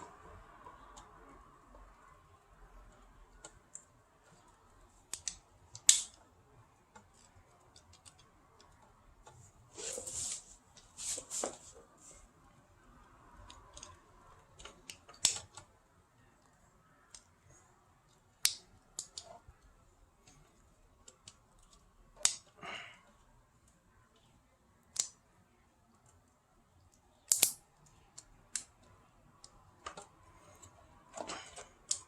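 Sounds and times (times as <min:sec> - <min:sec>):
scraping rustle: 0:09.7 - 0:12.2.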